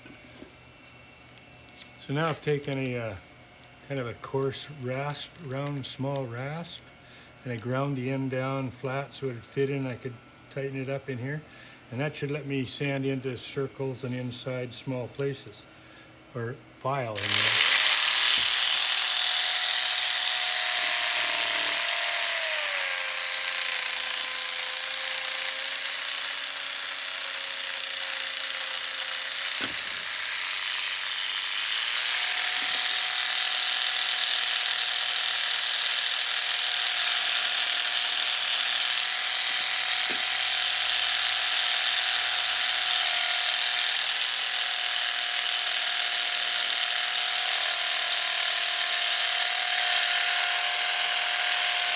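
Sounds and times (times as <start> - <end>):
rotary tool rasping: 17.2 - 51.9.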